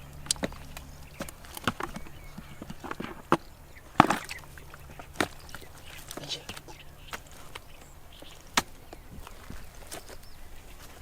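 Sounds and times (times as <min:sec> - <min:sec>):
digging knocks and thuds: 0:00.2 - 0:07.6, 0:08.3 - 0:10.2.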